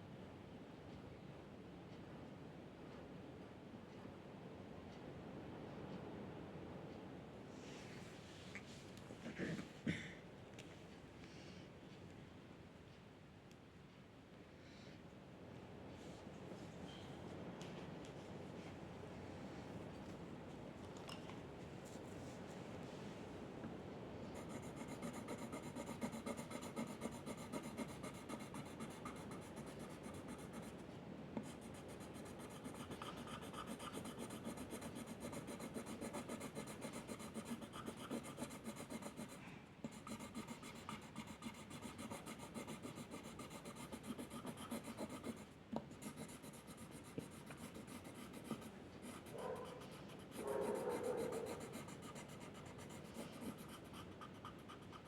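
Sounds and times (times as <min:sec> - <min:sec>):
drawing tool scratching on paper: 0:24.4 - 0:30.8, 0:31.4 - 0:55.0.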